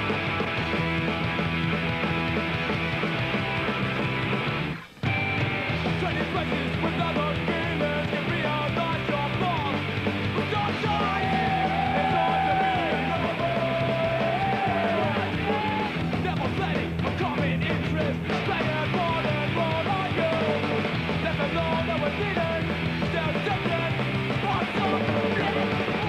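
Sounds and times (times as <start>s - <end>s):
punk rock music: 0.0s - 26.0s
shouted vocal: 10.6s - 16.0s.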